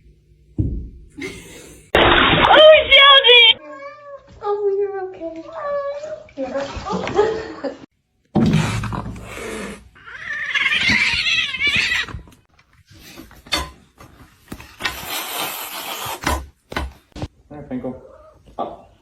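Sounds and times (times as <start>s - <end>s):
cat yowling: 10.0s - 12.2s.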